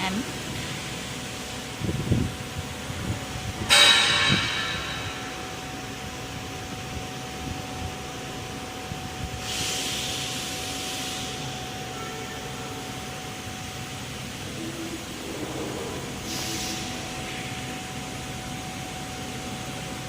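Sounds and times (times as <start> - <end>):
steady machine hum: 0.0 - 20.0
sharp metallic clang: 3.7 - 5.4
burst of hiss: 9.4 - 11.5, 16.2 - 17.5.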